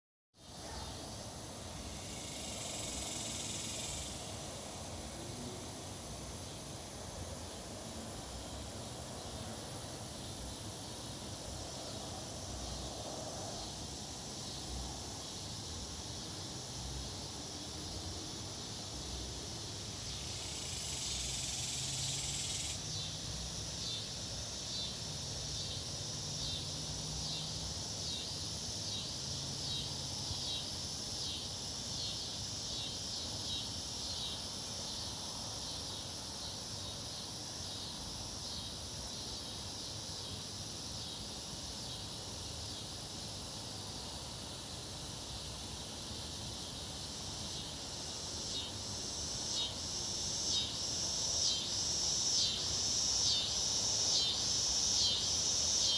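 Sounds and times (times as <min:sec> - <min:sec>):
insects trilling: 0:00.4 - 0:55.9
loud insect buzz: 0:01.8 - 0:06.0, 0:46.6 - 0:55.9.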